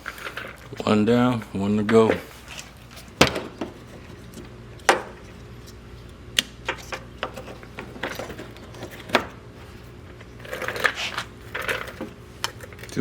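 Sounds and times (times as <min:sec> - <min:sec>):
scraping and rustling: 0:06.7 - 0:13.0.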